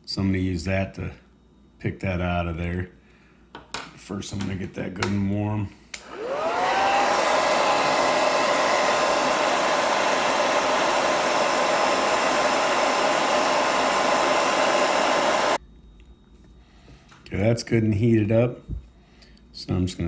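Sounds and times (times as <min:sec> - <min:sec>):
hair dryer blowing: 0:05.9 - 0:15.6.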